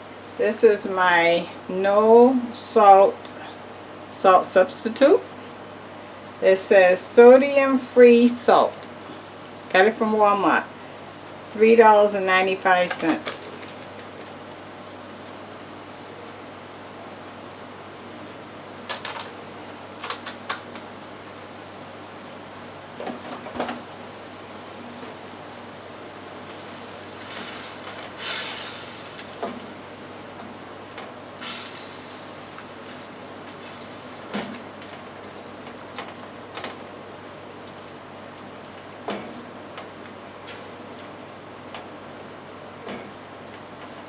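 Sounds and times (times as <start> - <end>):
chicken sizzling in a pan: 9.0 - 35.6.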